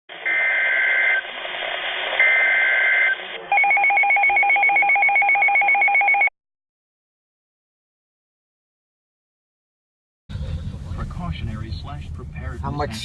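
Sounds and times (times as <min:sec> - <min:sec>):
radio hiss: 0:00.1 - 0:03.5.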